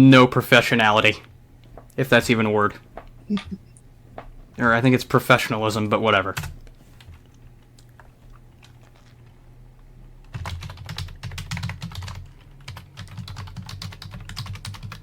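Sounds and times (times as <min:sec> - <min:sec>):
rapid keyboard typing: 0:06.2 - 0:07.3, 0:10.2 - 0:15.0.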